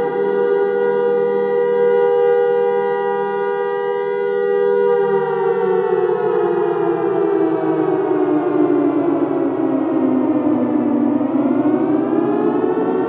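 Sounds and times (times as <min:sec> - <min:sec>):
air raid siren: 0:00.0 - 0:13.0.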